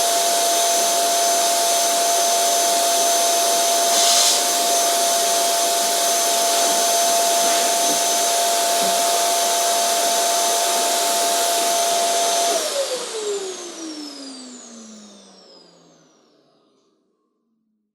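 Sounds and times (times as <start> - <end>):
vacuum cleaner running: 0.0 - 16.7
vacuum motor winding down: 0.0 - 16.8.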